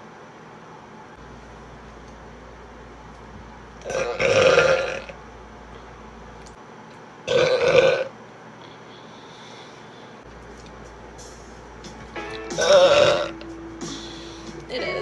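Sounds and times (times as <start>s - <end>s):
woman burping loudly: 3.9s - 5.1s, 7.3s - 8.1s, 12.6s - 13.3s.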